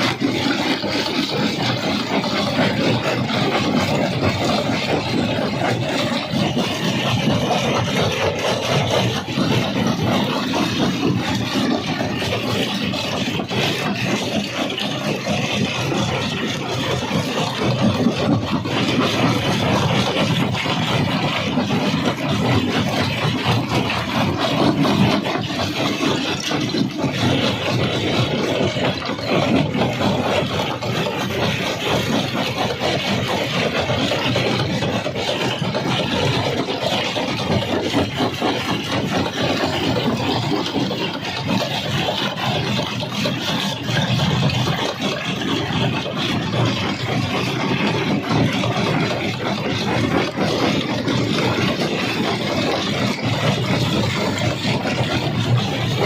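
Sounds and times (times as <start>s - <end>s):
rock crusher clattering: 0.0s - 56.0s.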